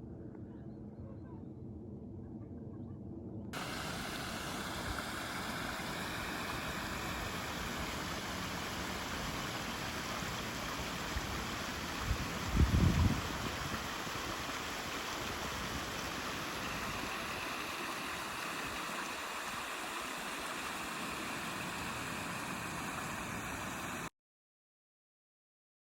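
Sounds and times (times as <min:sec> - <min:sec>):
steady rushing outdoor noise: 0:03.6 - 0:24.1.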